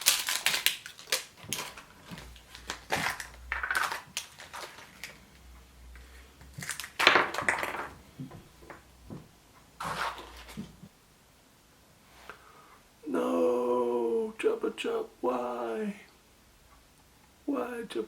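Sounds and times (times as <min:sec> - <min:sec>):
wrapper crinkling and crackling: 0:00.0 - 0:05.5, 0:06.5 - 0:07.7.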